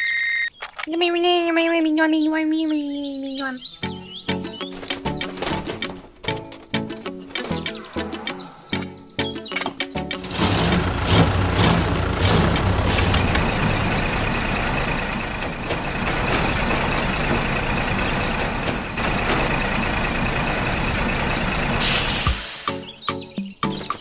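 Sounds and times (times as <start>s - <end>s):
truck engine running: 10.2s - 22.8s
short loud hiss: 21.8s - 22.8s.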